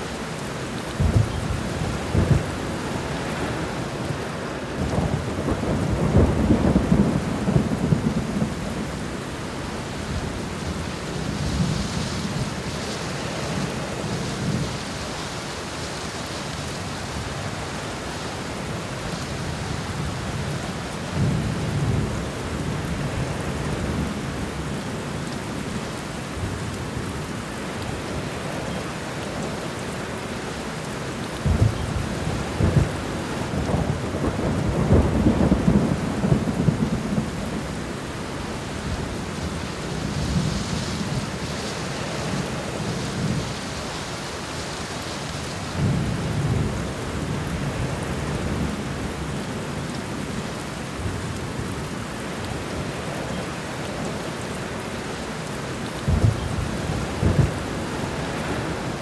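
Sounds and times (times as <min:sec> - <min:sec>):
steady rain falling: 0:00.0 - 0:59.0
rolling thunder: 0:01.0 - 0:04.2, 0:04.8 - 0:09.2, 0:31.4 - 0:37.9, 0:56.0 - 0:59.0.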